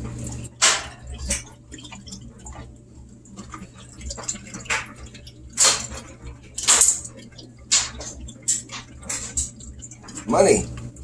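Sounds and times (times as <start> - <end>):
water dripping: 0.0 - 11.0.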